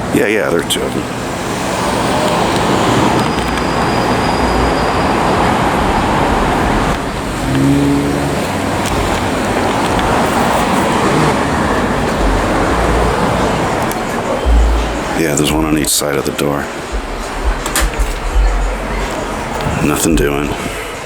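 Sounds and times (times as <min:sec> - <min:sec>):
city traffic with cars passing: 0:00.0 - 0:21.0
short low tone: 0:14.3 - 0:15.9.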